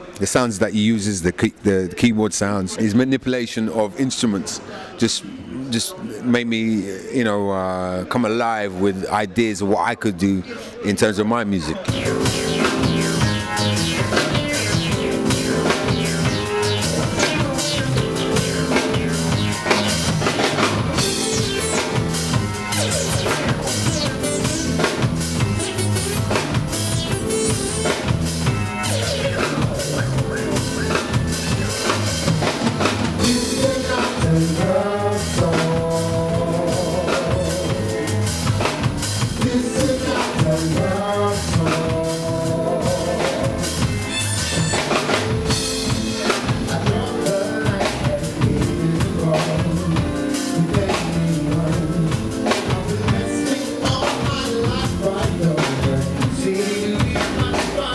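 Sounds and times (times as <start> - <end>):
soul band music: 11.8 - 57.9
person singing: 11.9 - 32.4, 33.0 - 38.5, 39.3 - 43.9, 45.8 - 57.9
drum kit beat: 11.9 - 57.9.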